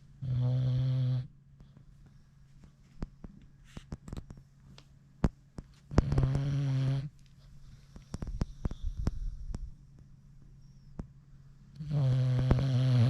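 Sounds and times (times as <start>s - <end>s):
dog snoring: 0.2s - 1.4s, 5.9s - 7.2s, 11.8s - 13.0s
dog breathing: 6.0s - 9.7s.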